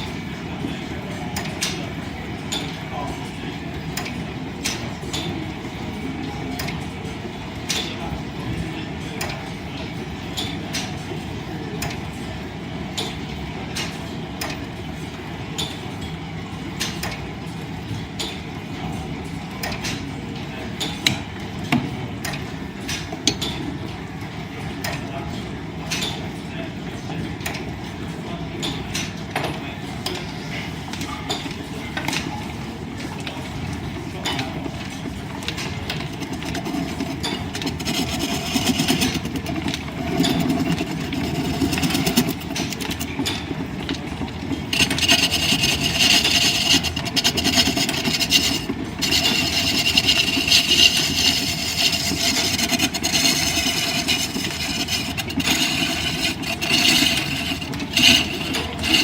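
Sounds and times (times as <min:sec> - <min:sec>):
wood lathe low rumble: 0:35.3 - 0:59.0
turning tool scraping wood: 0:35.6 - 0:59.0.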